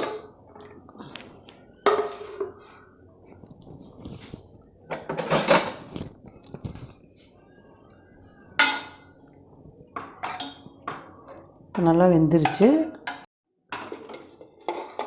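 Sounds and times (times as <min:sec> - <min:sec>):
metal cookware clattering: 0:00.0 - 0:00.4, 0:01.8 - 0:02.6, 0:04.9 - 0:06.0, 0:08.5 - 0:09.1, 0:10.0 - 0:15.0.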